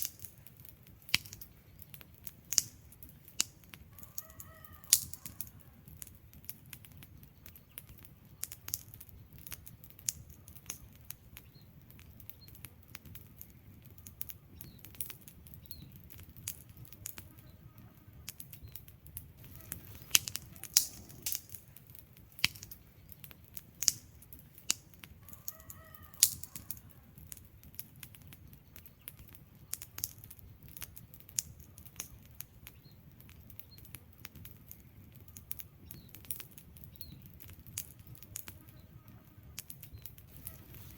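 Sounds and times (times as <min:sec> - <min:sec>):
low rumble of flames: 0:00.0 - 0:40.9
wood fire pops and snaps: 0:00.0 - 0:40.9.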